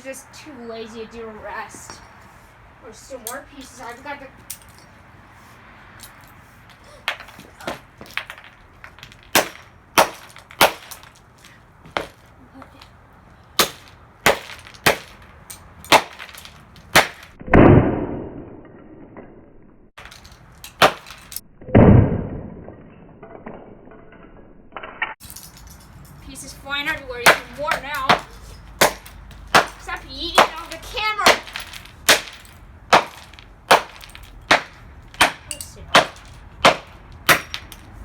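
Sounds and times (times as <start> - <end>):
plastic and glass pieces clinking: 3.2 - 5.0, 25.2 - 38.0.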